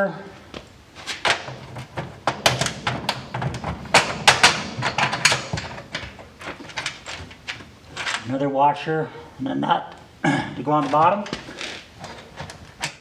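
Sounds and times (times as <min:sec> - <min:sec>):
bolts and washers clicking: 0:00.5 - 0:08.4, 0:10.7 - 0:13.0.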